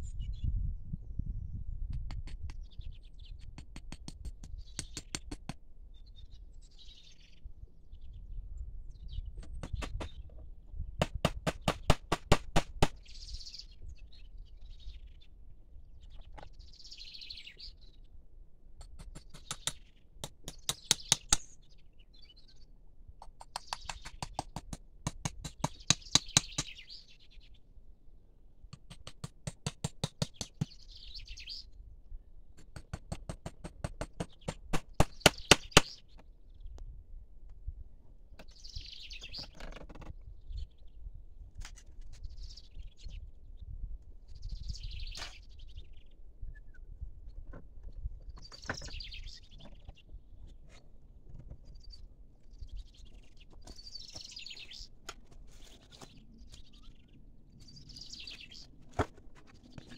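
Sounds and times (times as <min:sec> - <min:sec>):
birds chattering rattles: 0:02.2 - 0:05.4, 0:06.0 - 0:10.4, 0:11.4 - 0:18.1, 0:18.8 - 0:27.6, 0:30.0 - 0:31.8, 0:32.6 - 0:36.8, 0:38.4 - 0:43.7, 0:44.3 - 0:59.9
bird chirps: 0:13.0 - 0:15.4, 0:16.0 - 0:18.2, 0:19.1 - 0:24.6, 0:25.6 - 0:27.6, 0:30.3 - 0:31.8, 0:34.2 - 0:36.8, 0:38.4 - 0:41.1, 0:42.2 - 0:59.9.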